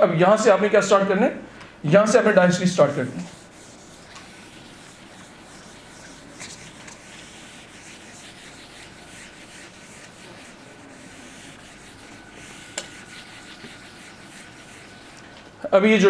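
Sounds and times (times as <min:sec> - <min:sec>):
pen writing on surface: 0:03.2 - 0:15.3.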